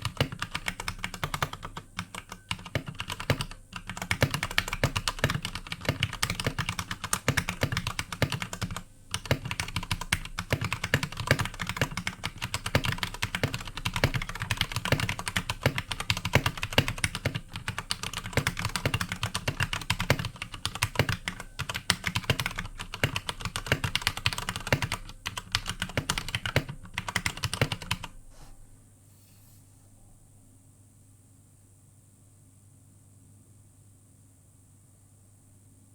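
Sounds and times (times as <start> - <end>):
mechanical keyboard typing: 0.0 - 28.1
faint hiss: 28.1 - 35.9.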